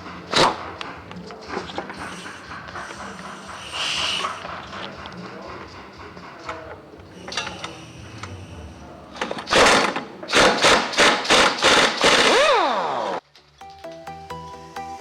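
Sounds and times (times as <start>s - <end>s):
tools clinking: 0.0s - 7.8s.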